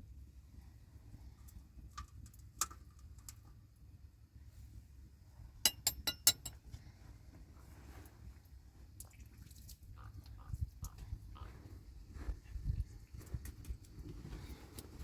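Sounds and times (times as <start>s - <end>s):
hard objects clinking together: 5.7s - 6.6s.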